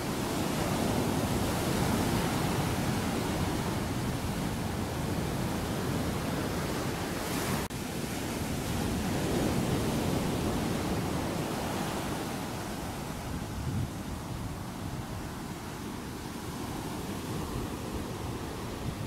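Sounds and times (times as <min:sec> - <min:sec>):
ocean surf washing onto beach: 0:00.0 - 0:19.0.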